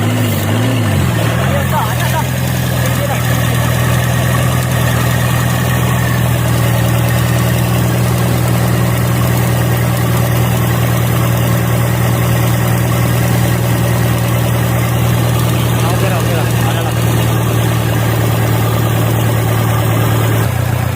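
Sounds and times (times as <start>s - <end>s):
diesel engine idling: 0.0s - 20.9s.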